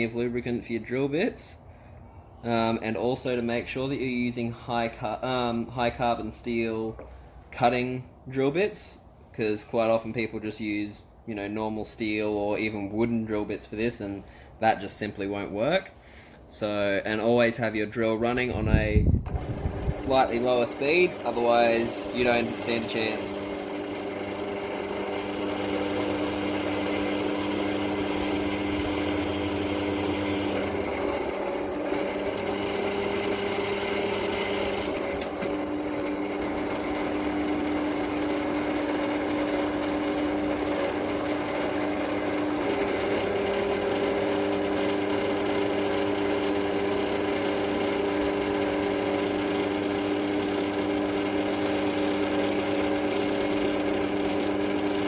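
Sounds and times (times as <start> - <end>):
drill press motor humming: 19.2 - 55.0.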